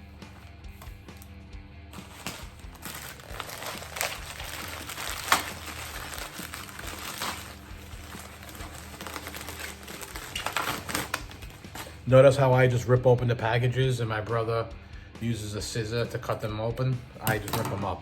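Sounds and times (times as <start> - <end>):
packaging crinkling and tearing: 2.0 - 12.0.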